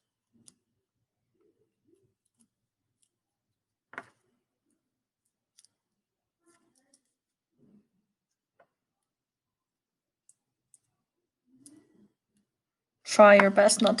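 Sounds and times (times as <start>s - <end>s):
faint clicks and taps handling paper: 0.0s - 9.2s, 10.2s - 11.0s.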